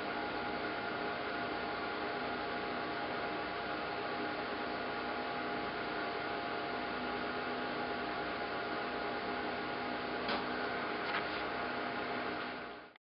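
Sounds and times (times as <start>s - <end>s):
vacuum suction hiss and hum: 0.0s - 13.0s
brief knock: 10.3s - 10.5s.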